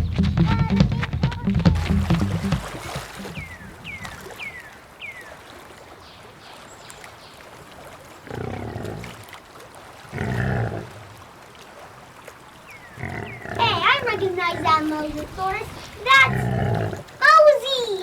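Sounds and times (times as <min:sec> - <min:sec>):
faint trickling water: 0:00.0 - 0:18.0
descending bird chirps: 0:03.2 - 0:05.2
growling animal roars: 0:08.2 - 0:09.2, 0:10.1 - 0:10.9, 0:13.0 - 0:13.8, 0:16.3 - 0:17.0.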